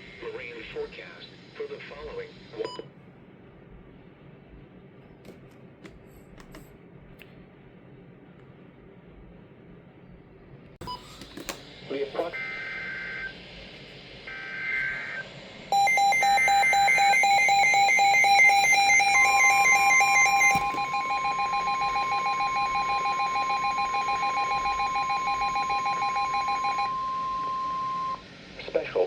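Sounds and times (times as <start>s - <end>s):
steady warning alarm tone: 14.3s - 28.2s
rapid alarm beeping: 15.7s - 28.2s.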